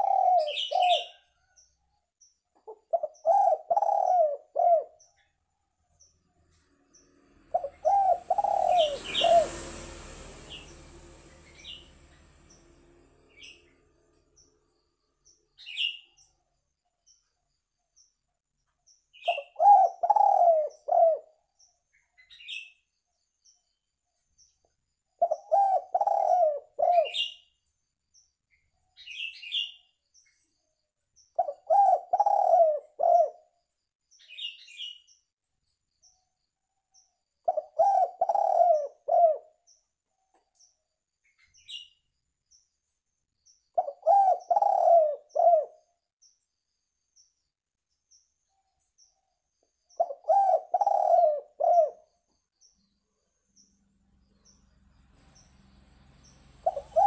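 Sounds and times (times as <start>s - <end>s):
dove cooing: 0.0s - 1.3s, 2.6s - 5.1s, 7.5s - 9.6s, 19.3s - 21.4s, 25.2s - 27.4s, 31.4s - 33.5s, 37.5s - 39.6s, 43.8s - 45.8s, 50.0s - 52.1s, 56.3s - 57.0s
small high bird chirps: 0.0s - 57.0s
burst of noise: 8.6s - 13.8s.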